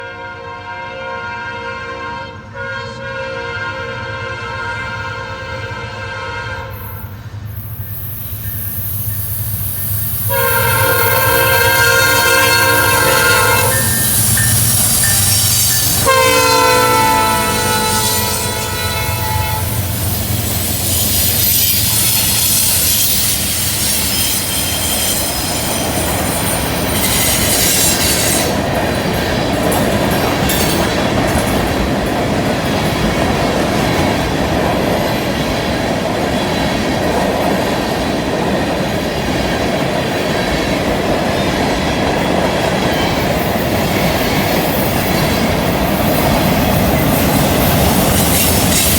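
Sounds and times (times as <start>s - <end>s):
train horn chord: 0.0s - 7.2s, 10.3s - 19.8s
wheels squealing on rails: 6.5s - 48.9s
freight cars rumbling: 7.1s - 48.9s
clickety-clack of wheels: 7.6s - 48.9s.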